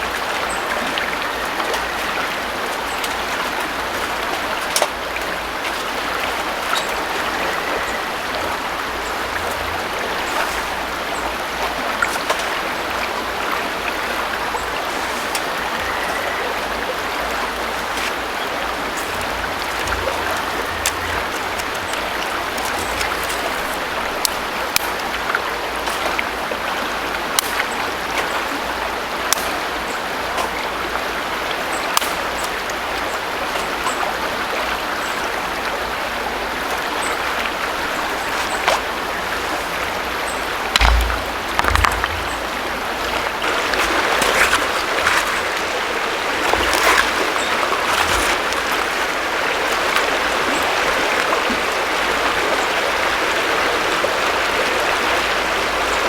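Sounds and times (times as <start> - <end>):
river water flowing: 0.0 - 56.0
low thumps: 40.7 - 43.4.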